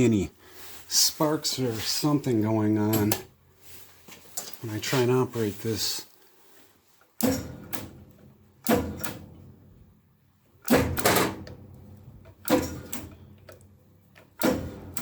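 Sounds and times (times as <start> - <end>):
lathe lever clunks: 7.2 - 9.5, 10.6 - 13.6, 14.2 - 15.0.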